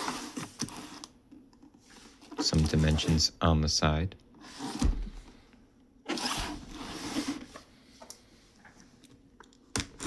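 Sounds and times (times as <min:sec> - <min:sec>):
cardboard packaging rubbing and scraping: 0:00.0 - 0:01.0, 0:01.9 - 0:03.3, 0:04.4 - 0:04.9, 0:06.1 - 0:07.7.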